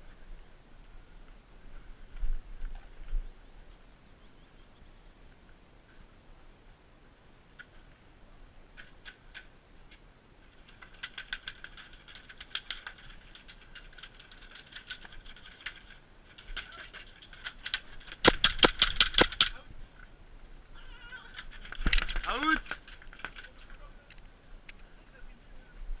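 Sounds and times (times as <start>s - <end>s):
airsoft guns firing: 18.1s - 19.6s.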